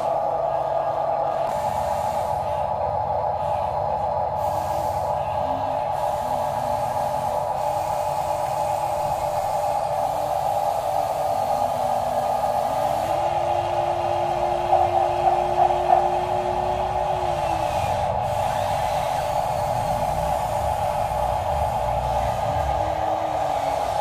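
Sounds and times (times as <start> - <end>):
small electric motors whirring: 13.0 - 24.0.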